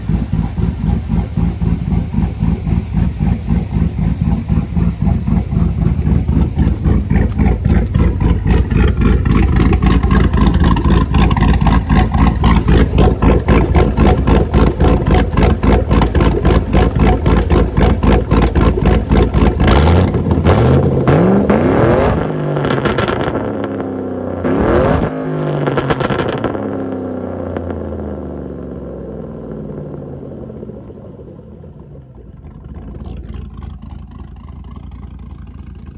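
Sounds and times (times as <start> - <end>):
engine revving: 0.0 - 27.8
car engine idling with lope: 0.0 - 35.9.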